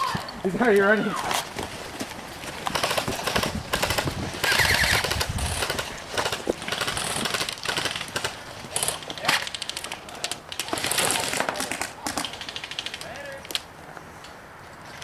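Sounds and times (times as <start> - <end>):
airsoft guns firing in bursts: 2.6 - 9.9.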